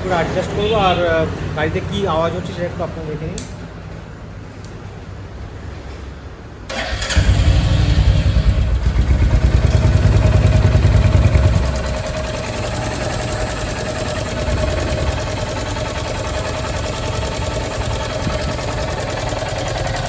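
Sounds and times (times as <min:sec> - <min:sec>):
engine tappet noise: 0:06.7 - 0:20.0
single-cylinder engine idling: 0:06.7 - 0:20.0.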